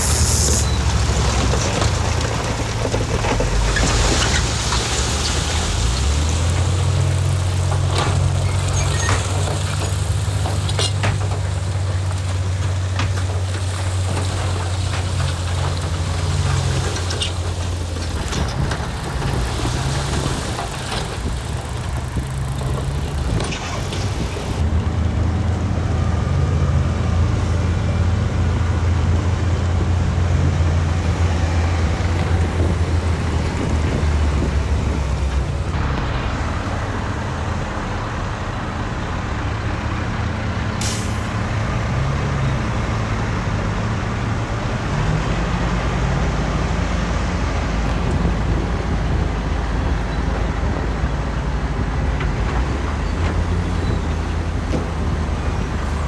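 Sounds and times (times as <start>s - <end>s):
heavy diesel engine droning: 0.0s - 56.0s.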